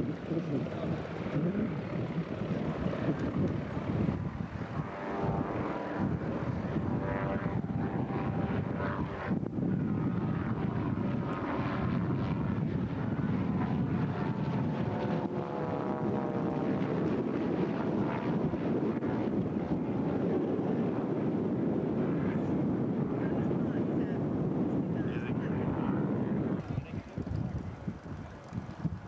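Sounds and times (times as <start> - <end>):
propeller airplane engine: 0.0 - 20.2.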